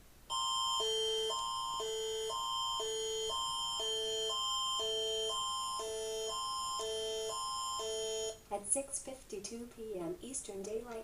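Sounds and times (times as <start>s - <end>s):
loud electronic alarm: 0.3s - 8.4s.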